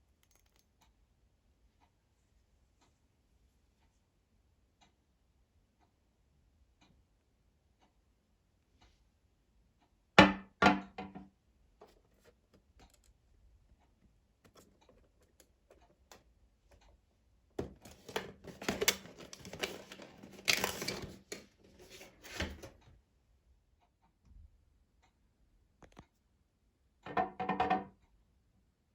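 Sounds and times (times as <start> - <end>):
sharp knocks on hard surface: 10.2 - 11.2
packaging clicking and scraping: 17.6 - 22.8.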